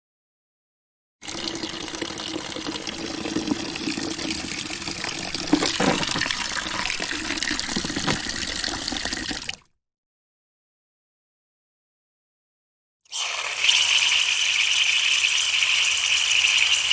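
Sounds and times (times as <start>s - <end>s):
water running from faucet: 1.2s - 9.6s, 13.1s - 16.9s.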